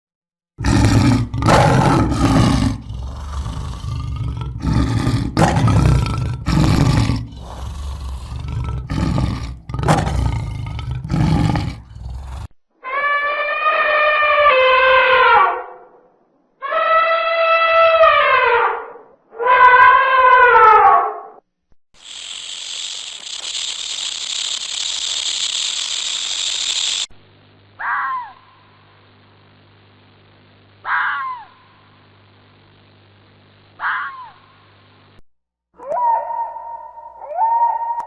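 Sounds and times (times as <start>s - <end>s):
lion roaring: 0.6s - 12.5s
elephants trumpeting: 0.6s - 15.6s.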